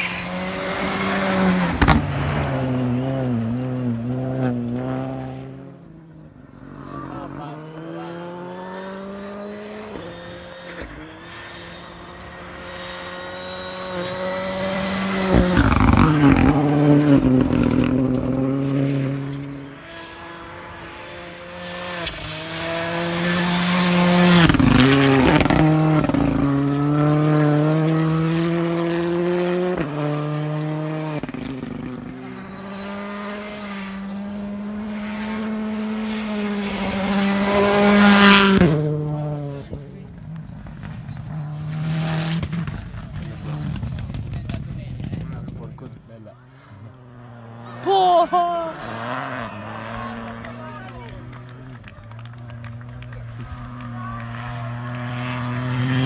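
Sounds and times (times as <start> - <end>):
rally car engines revving: 0.0 - 47.9, 48.7 - 56.0
exhaust crackles: 9.0 - 19.1.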